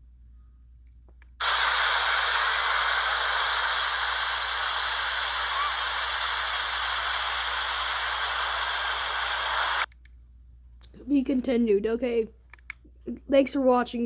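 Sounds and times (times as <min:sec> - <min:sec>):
static hiss: 0:01.4 - 0:09.9.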